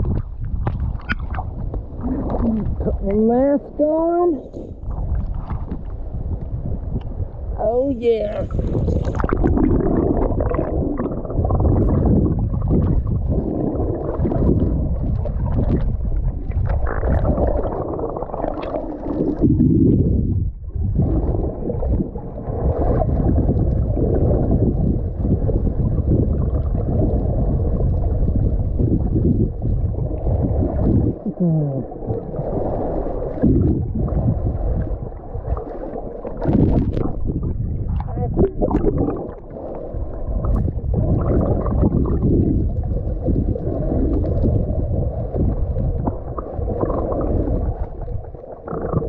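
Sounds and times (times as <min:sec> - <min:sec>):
muffled underwater gurgling rumble: 0:00.0 - 0:49.0.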